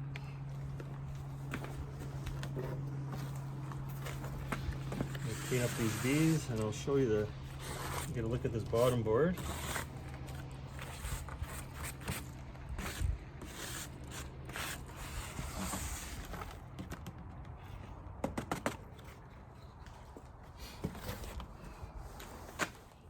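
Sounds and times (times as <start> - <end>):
beehive parts scraping and knocking: 0.6 - 13.0, 14.5 - 22.9.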